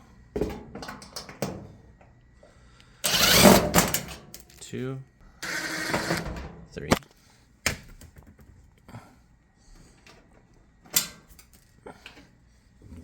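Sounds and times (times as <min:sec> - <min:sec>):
cordless drill clicks: 0:03.1 - 0:03.7.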